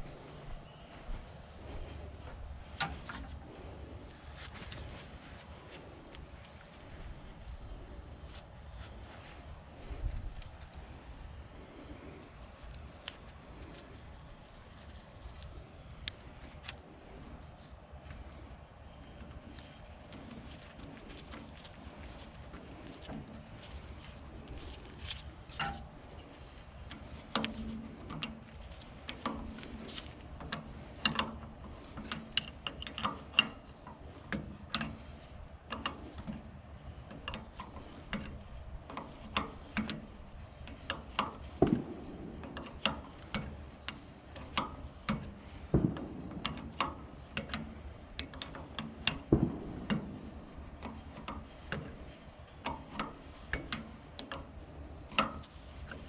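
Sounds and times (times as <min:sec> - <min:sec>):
hand tools clicking on metal: 0:19.5 - 0:56.0.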